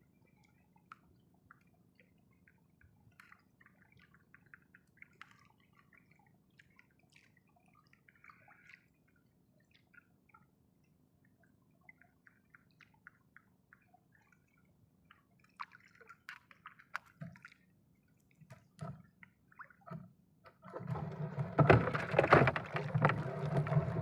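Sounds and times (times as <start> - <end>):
water sloshing and splashing: 15.5 - 24.0.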